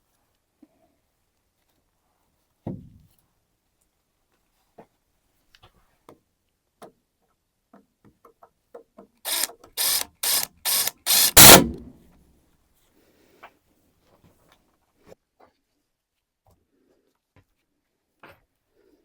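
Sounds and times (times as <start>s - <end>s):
hand saw cutting wood: 9.3s - 11.9s.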